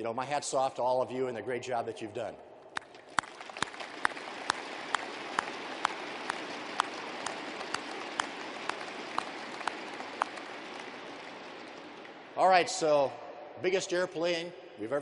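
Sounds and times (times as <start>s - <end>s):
crowd applauding: 2.8s - 12.4s.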